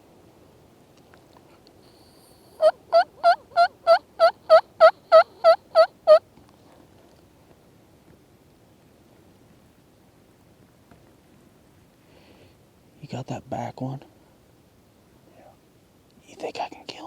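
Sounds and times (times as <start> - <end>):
turkey call yelps: 2.6 - 6.2.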